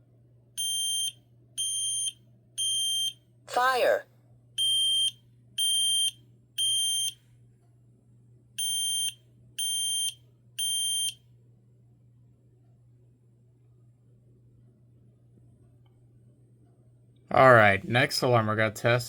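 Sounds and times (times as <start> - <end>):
smoke alarm high-pitched beeps: 0.6 - 3.2, 4.6 - 7.2, 8.6 - 11.2.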